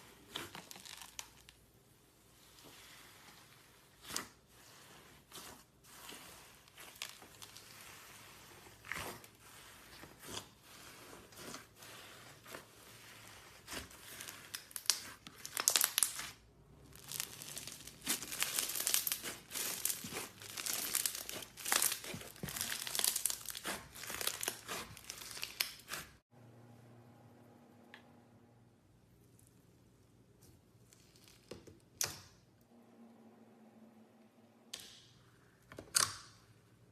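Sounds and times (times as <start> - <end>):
slime crackling and popping: 0.3 - 1.6, 6.2 - 26.2.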